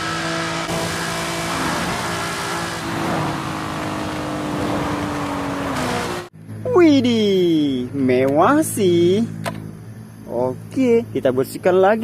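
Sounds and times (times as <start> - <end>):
race car engine: 0.0 - 6.6.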